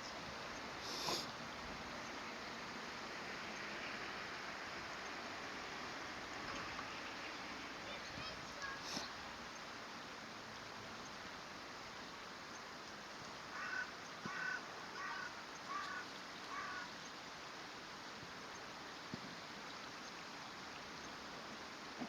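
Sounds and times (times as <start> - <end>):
crow cawing: 13.5 - 16.9.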